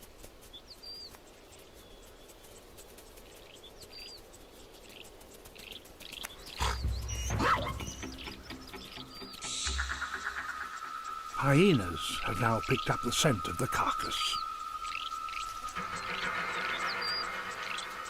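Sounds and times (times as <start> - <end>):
faint bird chirps: 0.5 - 18.0
animal scuffle with thuds: 4.8 - 8.9
animal call: 6.4 - 18.0.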